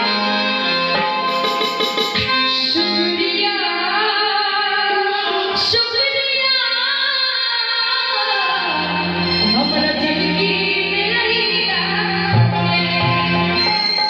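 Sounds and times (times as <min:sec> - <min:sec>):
electronic organ chords: 0:00.0 - 0:03.6, 0:08.6 - 0:14.0
woman singing: 0:00.0 - 0:14.0
percussion strokes: 0:01.2 - 0:02.4.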